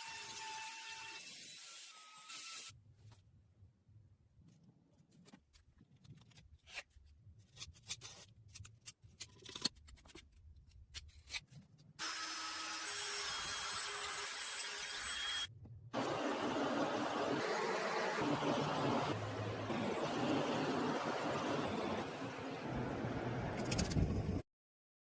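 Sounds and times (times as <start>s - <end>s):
tools clicking and scraping metal: 6.1s - 11.7s.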